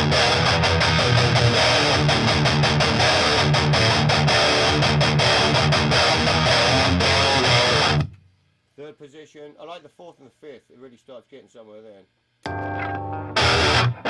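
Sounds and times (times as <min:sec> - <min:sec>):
electric guitar riffing: 0:00.0 - 0:08.1, 0:12.4 - 0:14.0.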